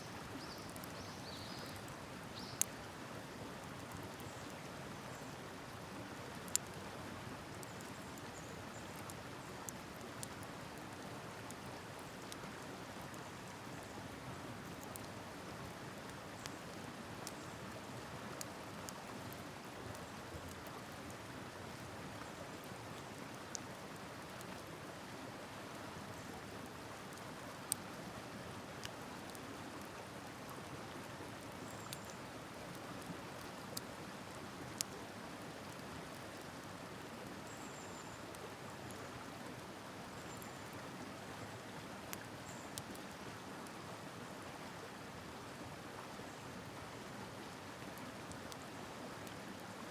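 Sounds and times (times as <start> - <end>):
campfire crackling and popping: 0.6 - 1.0, 6.3 - 25.0, 26.5 - 37.4, 42.1 - 43.0.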